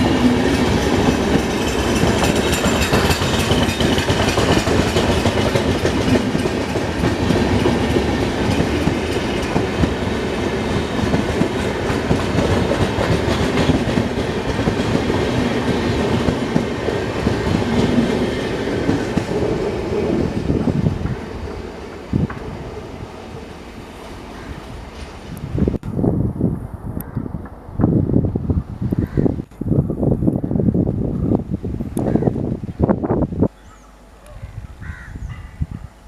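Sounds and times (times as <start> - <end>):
train wheels clattering over rails: 0.0 - 22.8.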